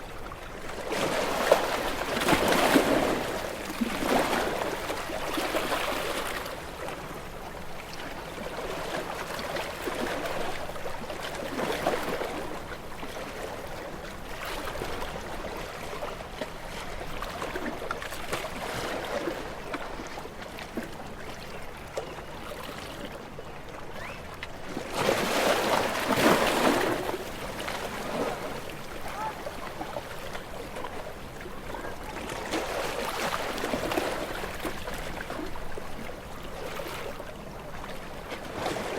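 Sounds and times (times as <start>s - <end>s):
small waves washing onto shore: 24.5s - 38.9s.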